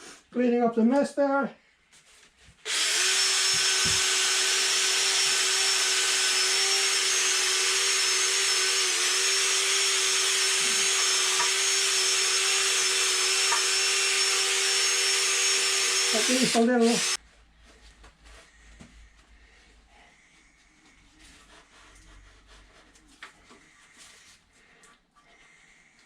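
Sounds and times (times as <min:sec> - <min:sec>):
cleaning tool motor hissing: 0:02.7 - 0:17.2.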